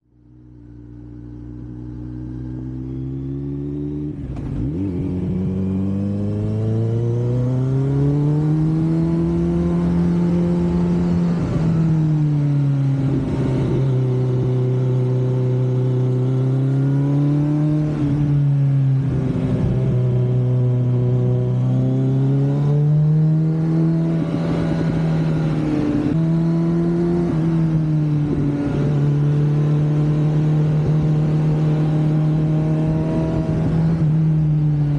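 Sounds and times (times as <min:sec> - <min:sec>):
motorcycle engine revving: 0:00.2 - 0:34.9
wind noise on microphone: 0:08.8 - 0:16.2, 0:30.5 - 0:34.9.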